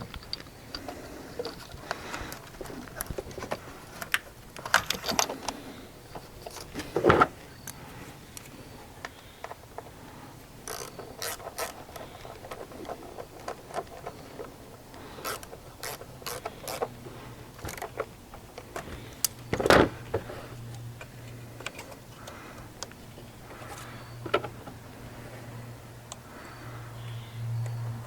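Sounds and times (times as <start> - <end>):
ratchet and socket clicking: 10.6 - 14.2, 14.9 - 17.0.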